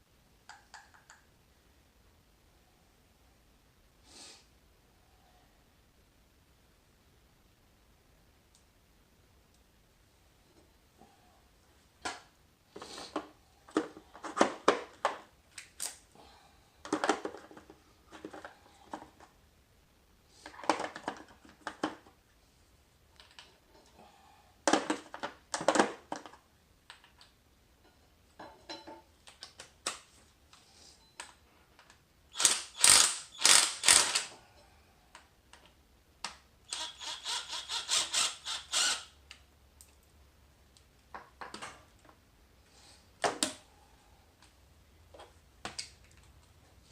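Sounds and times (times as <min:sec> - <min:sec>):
ratchet wrench clicking: 0:32.4 - 0:34.3.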